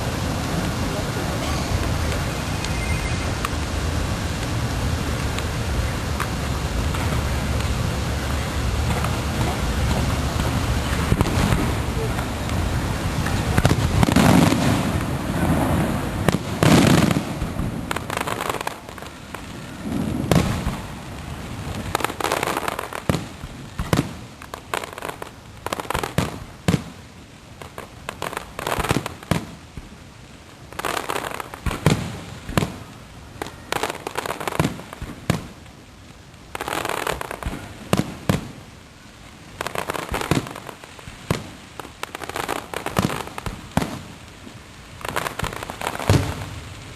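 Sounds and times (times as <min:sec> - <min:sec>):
firework crackling: 0:00.0 - 0:46.9.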